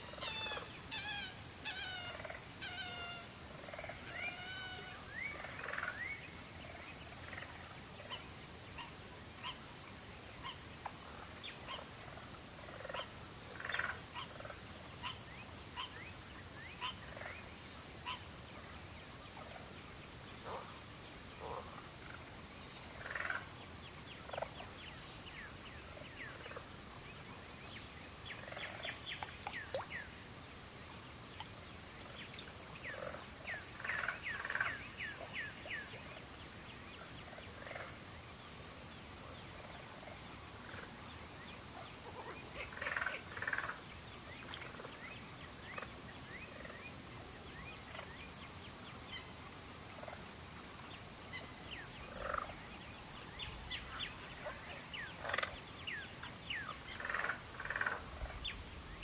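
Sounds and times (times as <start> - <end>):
crickets trilling: 0.0 - 59.0.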